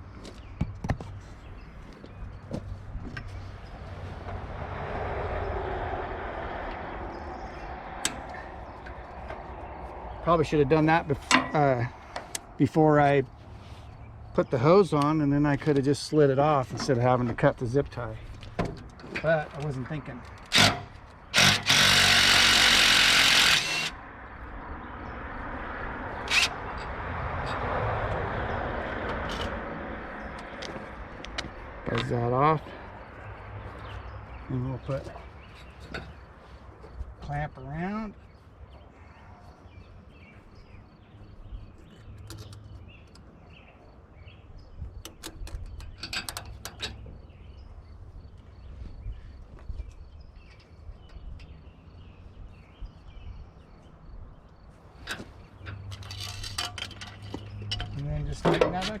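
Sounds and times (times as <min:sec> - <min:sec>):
rushing vehicle-like noise: 0:02.6 - 0:11.2, 0:19.7 - 0:35.0
small power tool running: 0:21.4 - 0:24.0.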